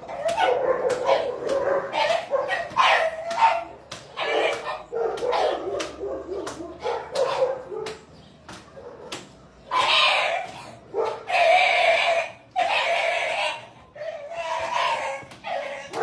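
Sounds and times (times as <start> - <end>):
dog yelping and whimpering: 0.0 - 5.6, 9.7 - 16.0.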